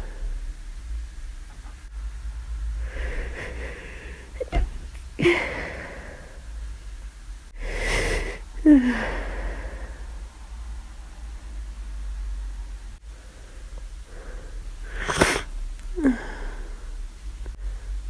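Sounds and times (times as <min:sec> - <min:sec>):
breathy gasping intake: 0:02.8 - 0:04.5, 0:14.0 - 0:17.0
person sneezing: 0:14.9 - 0:15.5.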